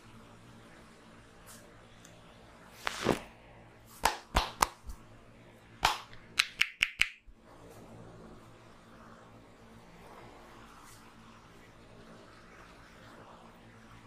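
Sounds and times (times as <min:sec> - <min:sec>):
hand slaps on head: 0:04.0 - 0:04.9, 0:05.8 - 0:07.2.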